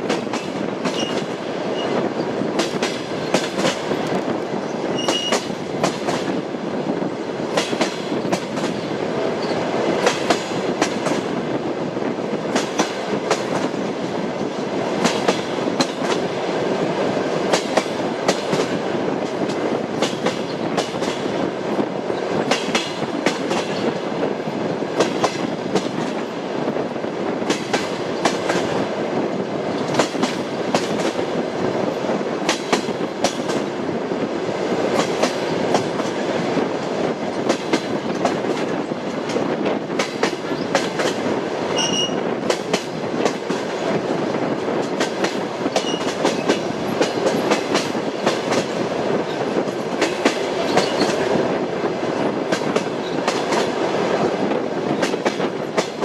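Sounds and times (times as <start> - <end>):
train wheels clacking: 0.0 - 6.5, 7.4 - 11.4, 12.1 - 26.5, 27.4 - 28.9, 29.7 - 33.8, 34.5 - 56.0
train carriage rumble: 0.0 - 56.0
brief high squeak: 5.0 - 5.4, 41.8 - 42.2.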